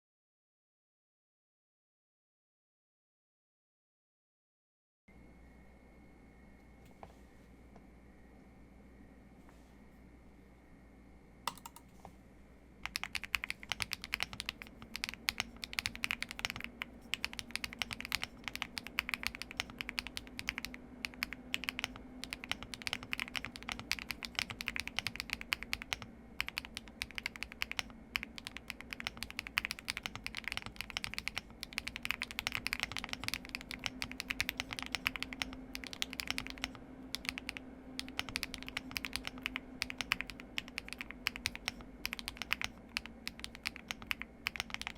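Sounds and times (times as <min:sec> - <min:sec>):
mechanical keyboard typing: 0:11.5 - 0:11.9, 0:12.8 - 0:44.9.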